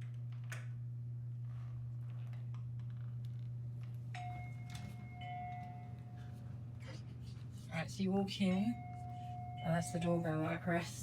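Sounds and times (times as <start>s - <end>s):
steady low hum: 0.0s - 11.0s
electronic doorbell chime: 4.2s - 6.3s, 8.5s - 10.3s.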